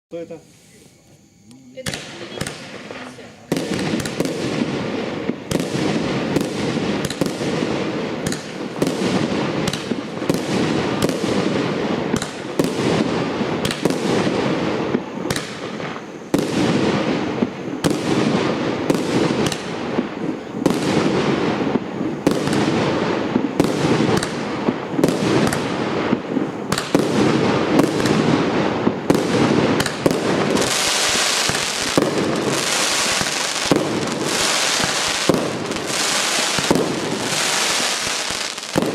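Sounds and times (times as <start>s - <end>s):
bright firework hiss: 0.1s - 38.9s
firework cake firing shots: 1.8s - 38.9s.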